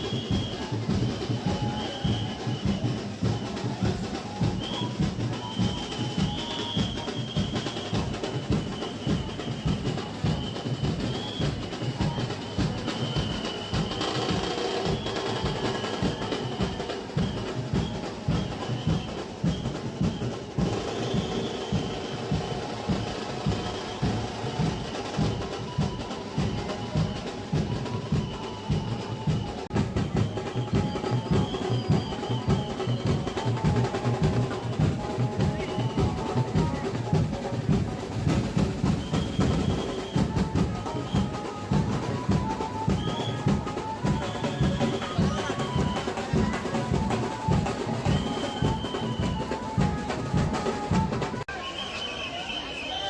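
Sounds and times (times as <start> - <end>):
procession drums fast beat: 0.0 - 51.6.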